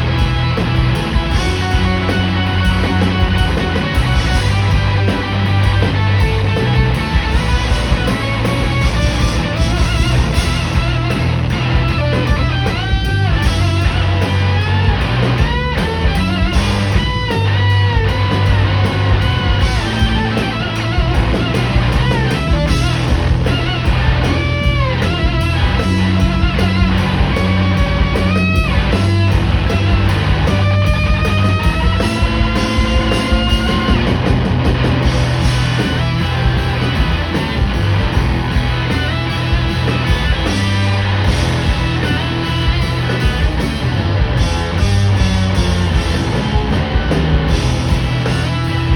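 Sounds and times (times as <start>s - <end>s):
electric guitar lead: 0.0s - 48.9s
live rock band playing: 0.0s - 48.9s.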